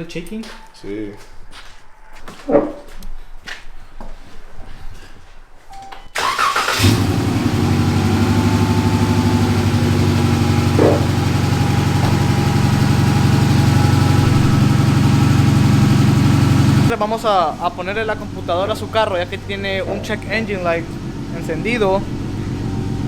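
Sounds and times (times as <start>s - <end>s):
car engine cranking and idling: 6.2s - 23.0s.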